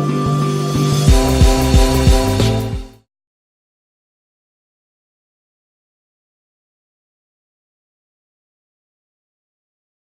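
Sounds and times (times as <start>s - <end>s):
sustained chords: 0.0s - 3.0s
heavy bass beat: 0.8s - 3.0s.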